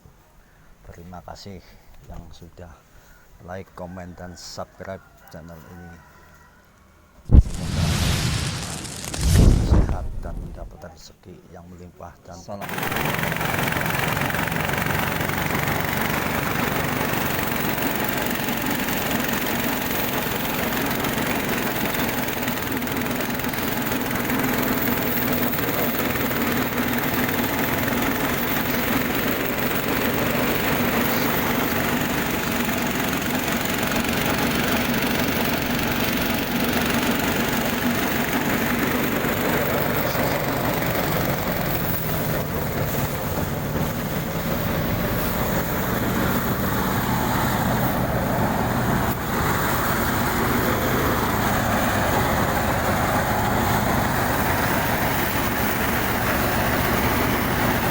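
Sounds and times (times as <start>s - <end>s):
small engine running: 12.6s - 57.9s.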